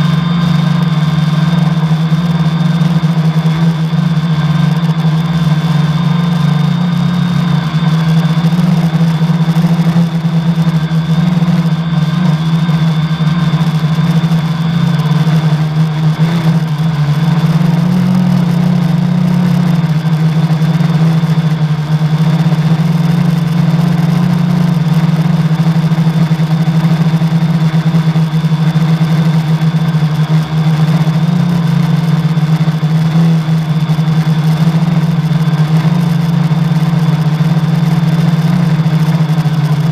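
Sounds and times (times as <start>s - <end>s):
quadcopter motors humming: 0.0s - 39.9s.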